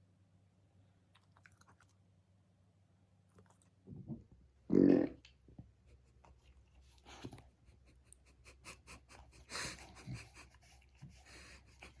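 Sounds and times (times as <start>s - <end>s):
puppy panting: 7.0s - 12.0s
puppy breathy huffs: 8.3s - 12.0s.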